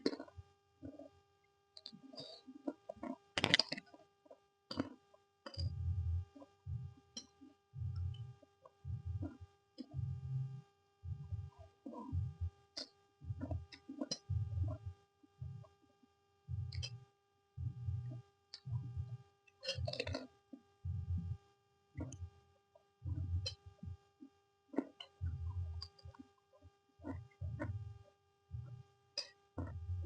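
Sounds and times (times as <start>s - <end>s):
wet mouth clicks and smacks: 3.4s - 3.8s.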